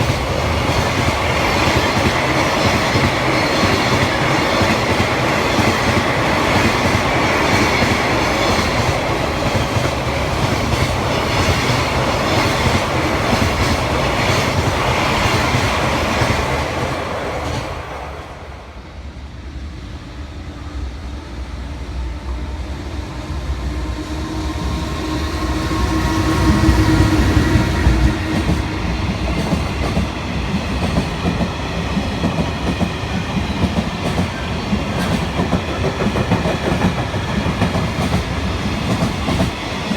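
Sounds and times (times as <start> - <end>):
approaching train hum: 0.0 - 39.9
freight train wheels clattering: 25.4 - 39.9.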